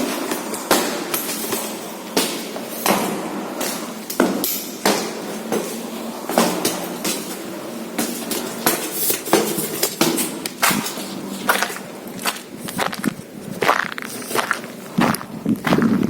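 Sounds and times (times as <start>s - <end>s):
footsteps crunching over rubble: 3.5s - 16.0s.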